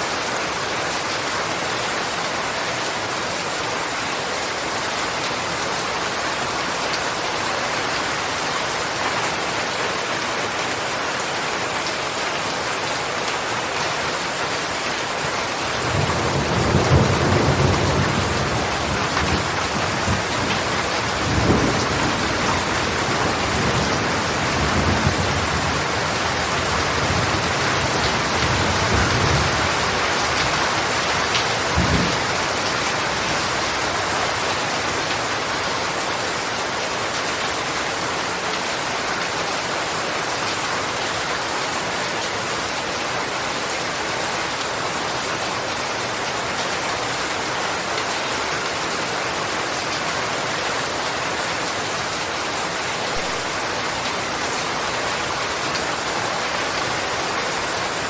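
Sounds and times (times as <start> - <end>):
heavy rain: 0.0 - 58.0
thunder rumbling: 31.6 - 32.6.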